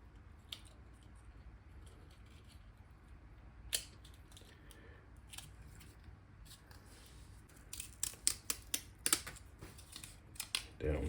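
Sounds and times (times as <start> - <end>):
low room hum: 0.0 - 11.0.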